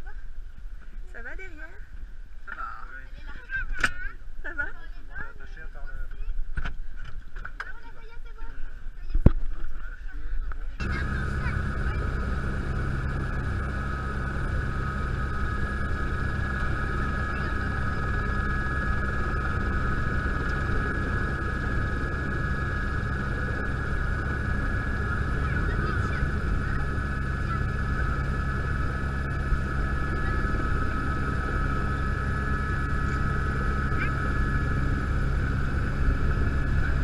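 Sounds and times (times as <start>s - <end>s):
turbine whine: 10.6s - 37.0s
helicopter rotor beat: 10.8s - 37.0s.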